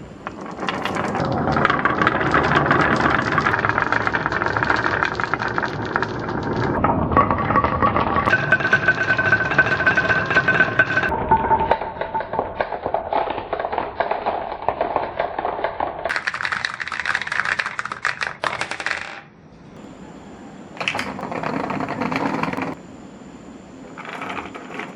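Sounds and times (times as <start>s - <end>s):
marbles clattering down wooden run: 0.2s - 19.3s, 20.8s - 22.8s, 24.0s - 24.9s.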